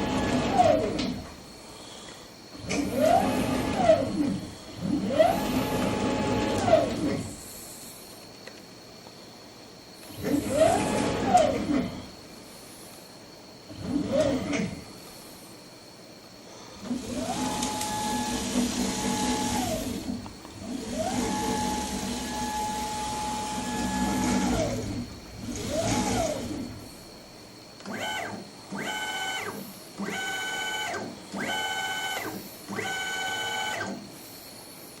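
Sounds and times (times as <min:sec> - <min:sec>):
stepper motors whining: 0:00.0 - 0:01.3, 0:02.6 - 0:07.4, 0:16.8 - 0:27.0.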